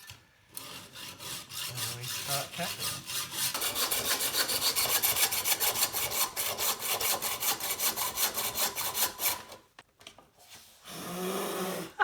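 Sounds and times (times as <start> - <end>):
saw cutting metal tube: 0.5 - 9.6.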